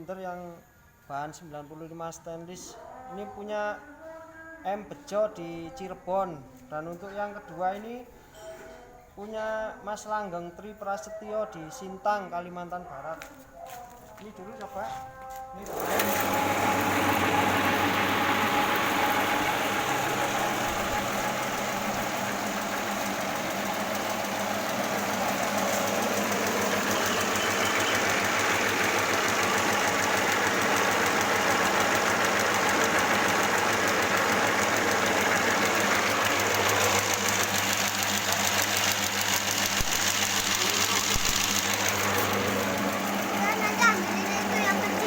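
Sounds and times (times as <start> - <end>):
machine rattling and humming: 15.7 - 45.0.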